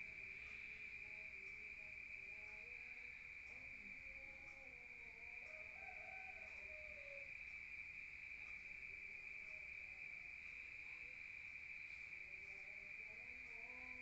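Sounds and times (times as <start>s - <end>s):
crickets chirring: 0.0s - 14.0s
rooster crowing: 5.4s - 7.4s.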